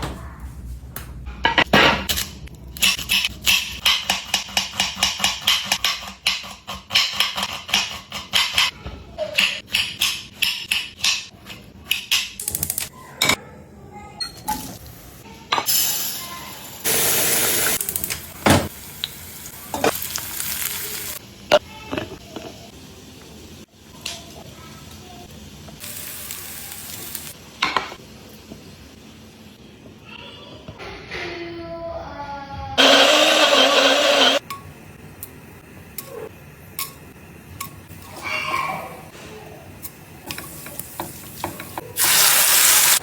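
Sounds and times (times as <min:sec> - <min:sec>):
food sizzling in hot oil: 0:15.7 - 0:21.2, 0:23.7 - 0:28.1, 0:39.8 - 0:43.0.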